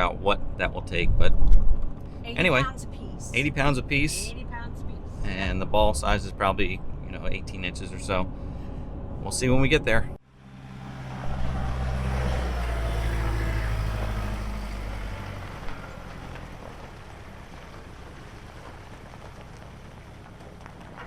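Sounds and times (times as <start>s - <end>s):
vehicle engine running: 10.2s - 21.0s.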